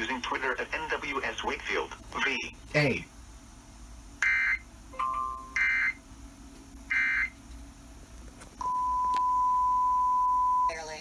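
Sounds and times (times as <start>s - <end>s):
brief pure tone: 8.6s - 10.8s
steady high beep: 8.6s - 11.0s.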